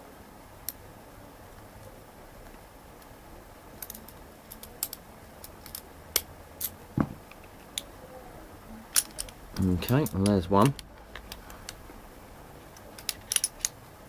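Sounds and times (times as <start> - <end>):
lock pick metallic clicks: 3.8 - 6.8, 8.9 - 11.8, 12.8 - 13.8
dull knock: 7.0 - 7.3.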